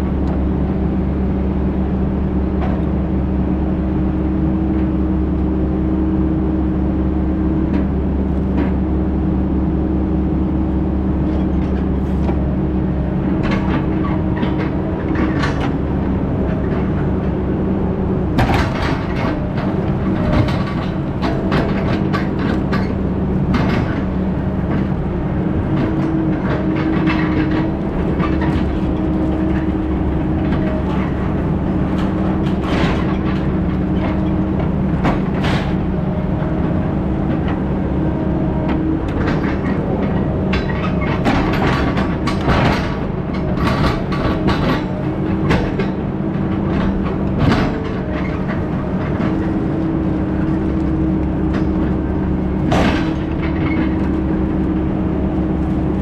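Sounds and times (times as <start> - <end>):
heavy diesel engine running: 0.0 - 56.0.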